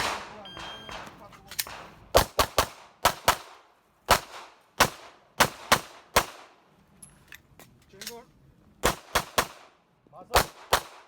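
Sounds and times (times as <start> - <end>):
pistol shots with echo: 0.0 - 6.4.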